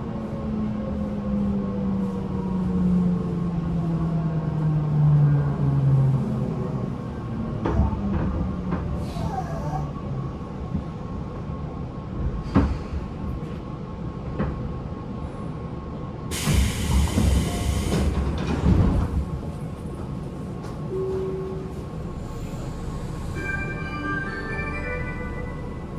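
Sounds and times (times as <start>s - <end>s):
train low rumble: 0.0s - 25.9s
loud hiss: 16.3s - 18.1s.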